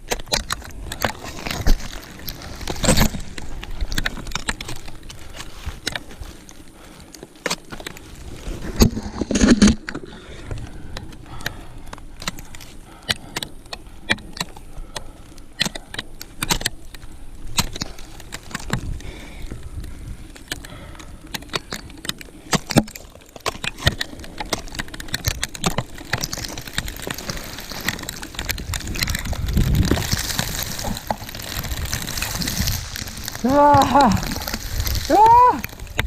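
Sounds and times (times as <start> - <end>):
rustling: 0.0 - 11.3, 14.3 - 36.0
climbing gear clicking: 0.0 - 36.0.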